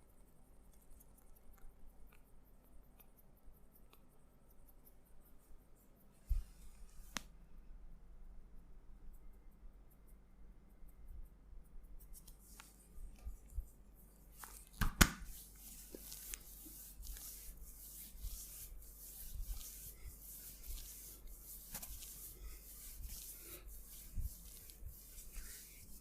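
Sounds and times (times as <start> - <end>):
hands rubbing skin: 3.8 - 7.3, 12.0 - 26.0
light taps on skin: 14.4 - 15.3
sharp smack on skin: 14.8 - 15.3.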